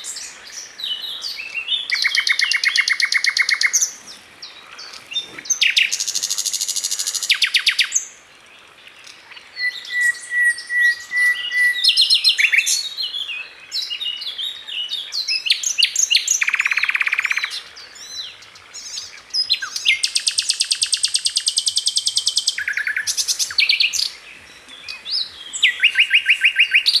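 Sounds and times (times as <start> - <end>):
songbirds chirping and singing: 0.0 - 27.0
bird trilling: 19.6 - 27.0.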